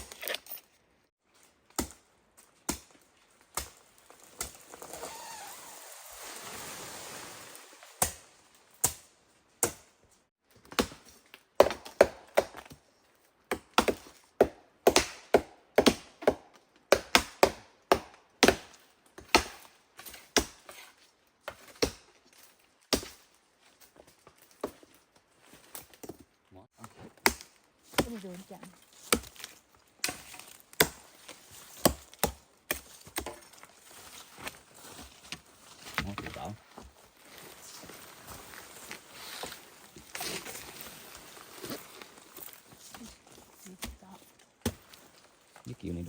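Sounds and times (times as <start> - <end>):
rustling: 3.4 - 8.7, 33.4 - 45.8
blade chopping wood: 8.0 - 8.2, 11.6 - 12.7, 13.5 - 19.7, 27.2 - 28.4, 31.7 - 33.5.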